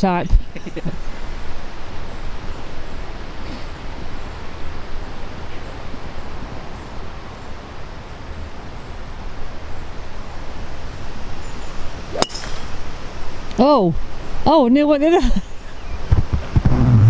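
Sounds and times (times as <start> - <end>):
wind rumbling on microphone: 0.0 - 14.5
golf club striking ball: 3.1 - 13.6.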